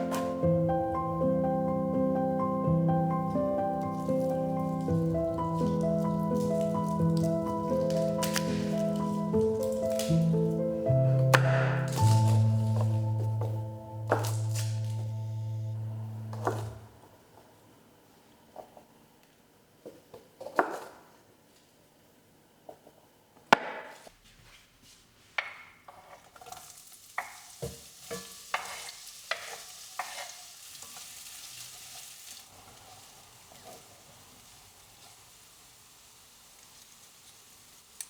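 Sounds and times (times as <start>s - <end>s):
sizzling hiss: 0.0s - 16.8s, 26.5s - 38.0s.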